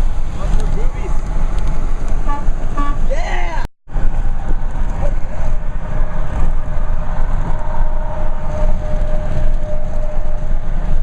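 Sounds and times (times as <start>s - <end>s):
highway traffic rumble: 0.0s - 11.0s
long vehicle horn: 2.2s - 3.1s
wind on microphone: 3.9s - 11.0s.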